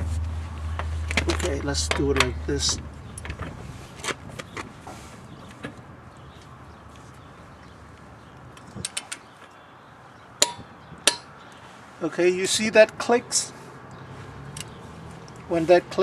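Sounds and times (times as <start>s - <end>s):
torque wrench clicking and knocking: 10.4s - 11.3s.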